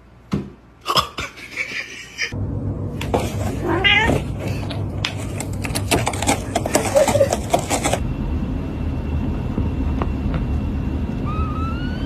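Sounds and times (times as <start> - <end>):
steady low hum: 0.0 - 12.0
cat meowing: 3.6 - 4.3, 11.2 - 12.0.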